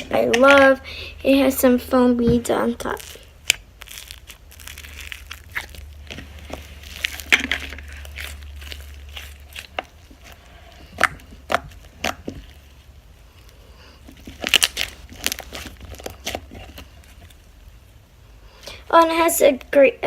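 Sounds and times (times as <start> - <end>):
slime crackling and popping: 2.4 - 17.8.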